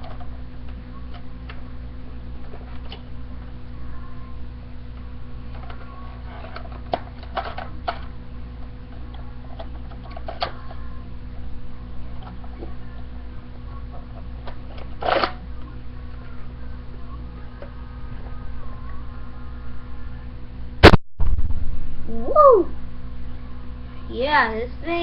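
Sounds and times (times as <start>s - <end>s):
plastic toy blaster clicks and rattles: 5.5s - 8.1s, 14.8s - 15.4s.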